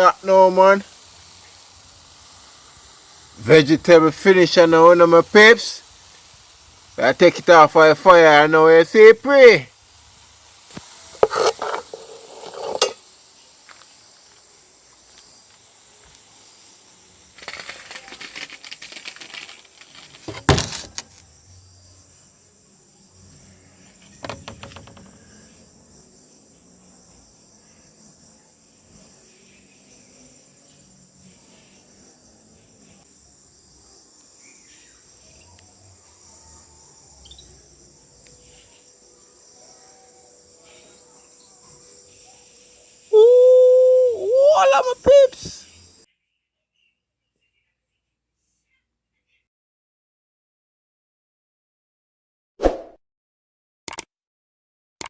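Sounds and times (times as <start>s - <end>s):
crickets chirping: 0.0s - 46.1s
high insect hum: 0.0s - 46.9s
metal pots and utensils clattering: 11.2s - 13.0s.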